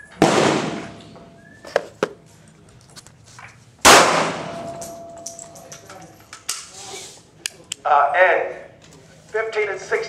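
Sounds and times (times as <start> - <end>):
pistol shots: 0.2 - 1.1, 3.8 - 5.0.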